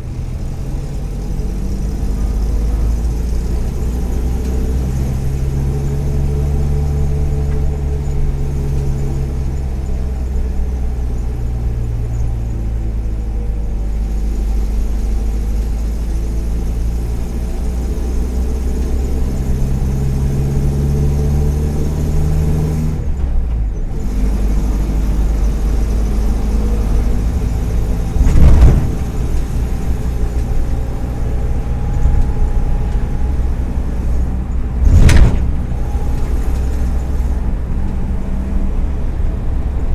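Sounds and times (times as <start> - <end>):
van engine pulling under way: 0.0 - 39.9
engine misfiring: 23.1 - 38.2
loud short thumps: 28.2 - 29.7, 34.8 - 36.0.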